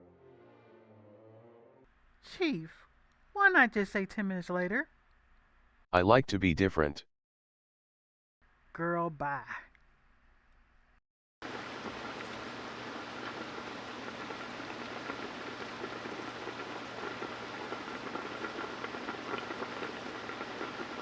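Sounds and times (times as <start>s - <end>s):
pot bubbling and crackling: 11.4s - 21.0s.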